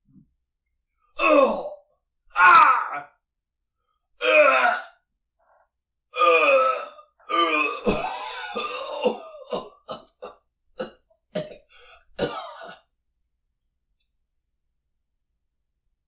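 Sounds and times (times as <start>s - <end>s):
man coughing: 7.8s - 11.6s, 12.2s - 12.8s.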